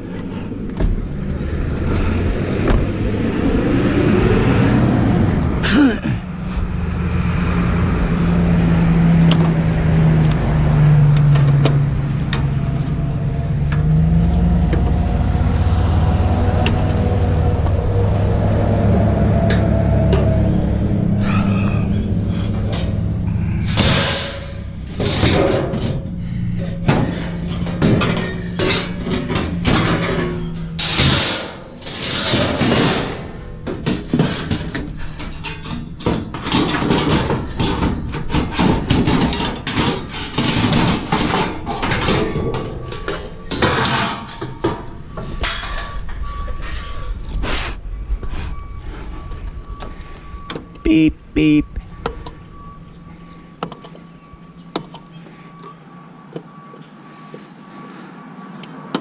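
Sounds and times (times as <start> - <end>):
metallic knocks and scrapes: 11.0 - 47.6.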